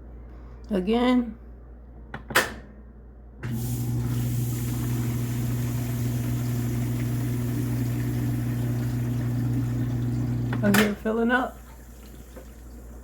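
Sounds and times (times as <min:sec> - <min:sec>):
washing machine drain pump humming: 0:03.4 - 0:13.0
rushing water: 0:03.7 - 0:10.6.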